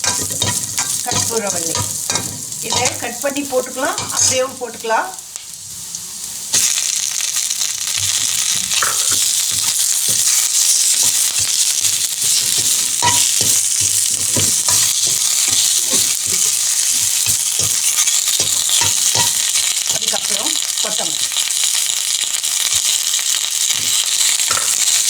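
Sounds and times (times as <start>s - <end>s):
spatula knocking and scraping pan: 0.0s - 4.6s, 8.0s - 20.4s, 23.7s - 24.9s
leaves sizzling in hot oil: 0.0s - 25.0s.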